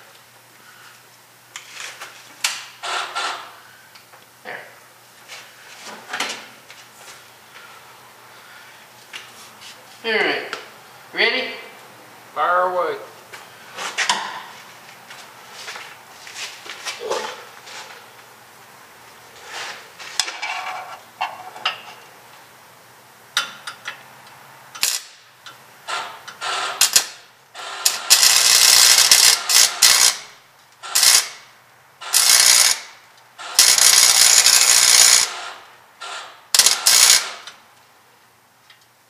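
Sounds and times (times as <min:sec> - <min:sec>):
welder arc crackling: 0:27.8 - 0:30.2, 0:31.0 - 0:31.4, 0:32.0 - 0:32.9, 0:33.6 - 0:35.5, 0:36.6 - 0:37.3.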